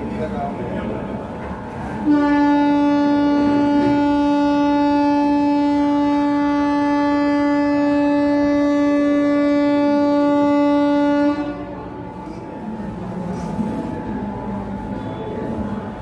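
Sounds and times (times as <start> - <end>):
locomotive horn blast: 2.0 - 12.0.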